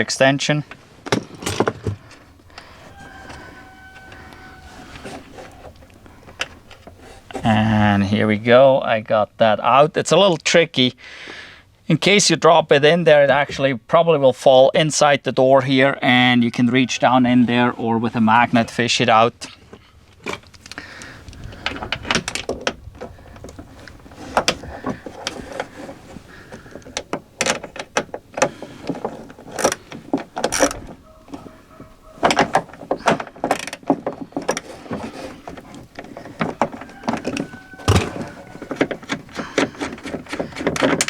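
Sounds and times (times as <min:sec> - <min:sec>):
metal clinks and knocks: 0:37.1 - 0:39.0.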